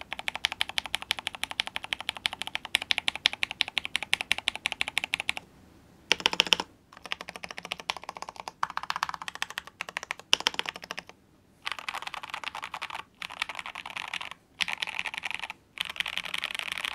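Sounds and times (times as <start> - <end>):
mechanical keyboard typing: 0.0 - 5.4, 6.1 - 16.9.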